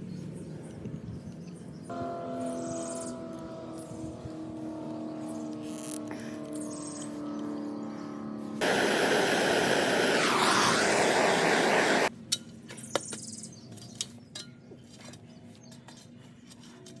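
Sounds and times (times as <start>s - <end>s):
loud rushing hiss with wavering tone: 8.6s - 12.1s.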